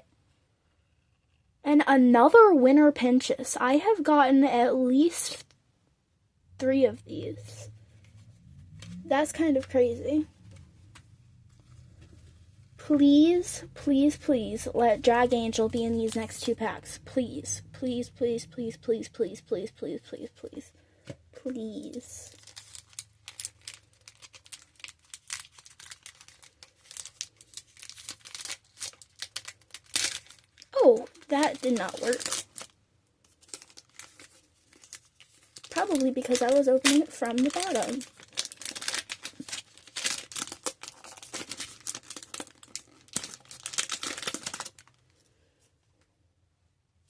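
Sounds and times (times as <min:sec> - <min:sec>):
card pack wrapper crinkling: 0:21.5 - 0:45.1.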